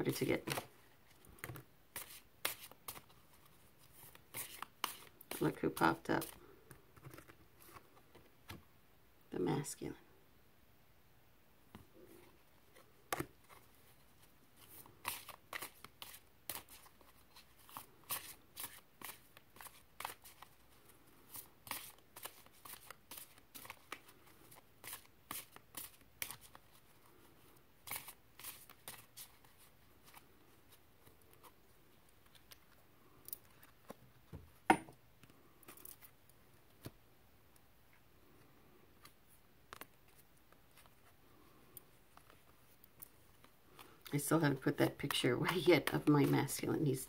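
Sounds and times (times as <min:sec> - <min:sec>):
cards shuffling: 0:00.1 - 0:08.6, 0:14.6 - 0:20.6, 0:21.3 - 0:26.8, 0:27.8 - 0:32.8.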